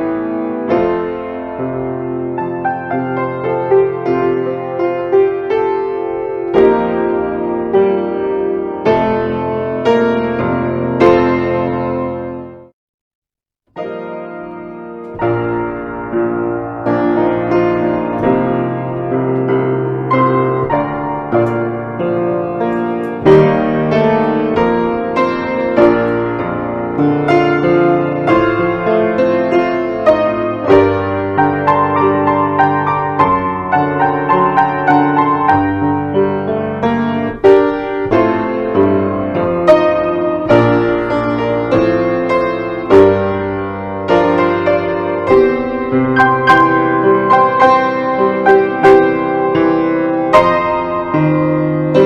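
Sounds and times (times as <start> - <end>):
solo piano piece: 0.0 - 12.8, 13.6 - 52.0.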